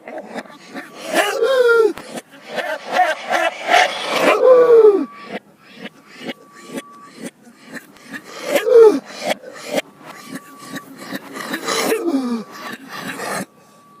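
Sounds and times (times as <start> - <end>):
coughing played backwards: 0.0 - 13.5
falling whoop: 1.1 - 5.4.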